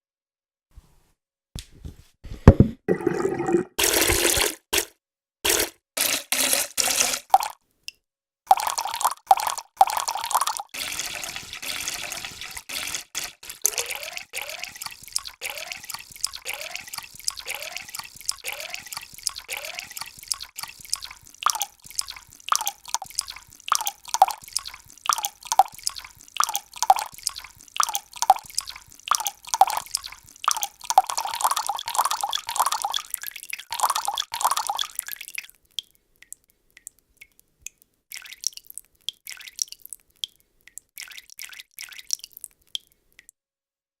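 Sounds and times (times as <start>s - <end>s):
water drops plopping into water: 13.7s - 43.4s.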